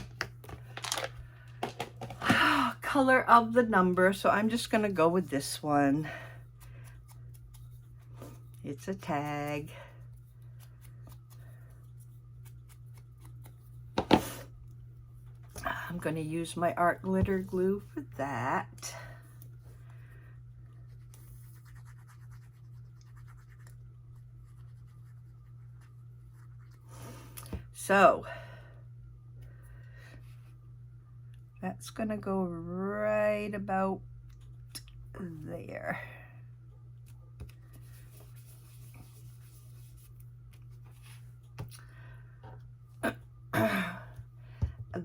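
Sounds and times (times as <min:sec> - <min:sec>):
paper rustling: 0:00.0 - 0:01.8
low electrical hum: 0:00.0 - 0:45.0.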